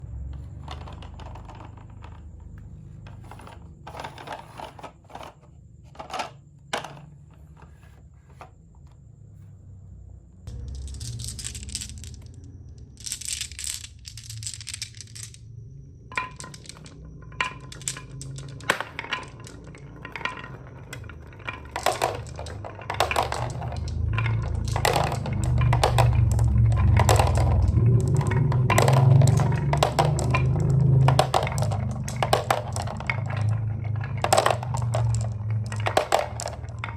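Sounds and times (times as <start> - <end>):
low rolling rumble: 0.0 - 5.2, 6.7 - 36.9
marbles rolling down wooden track: 0.2 - 8.5, 10.5 - 36.9
marbles clicking and clacking: 0.4 - 8.4, 10.5 - 36.9.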